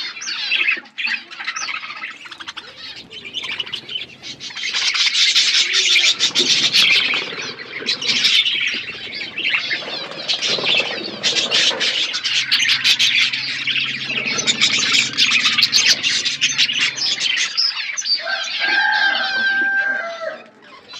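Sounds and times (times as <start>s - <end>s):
low held bird call: 2.1s - 4.8s, 5.8s - 17.6s
budgerigars chattering: 2.1s - 17.9s.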